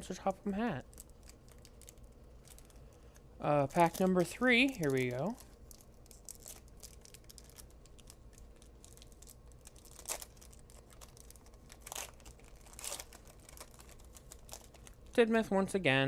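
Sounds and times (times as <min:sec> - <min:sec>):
wrapper ripping and crinkling: 0:00.8 - 0:02.9, 0:03.6 - 0:15.2
card wrapper crackling: 0:00.8 - 0:15.3.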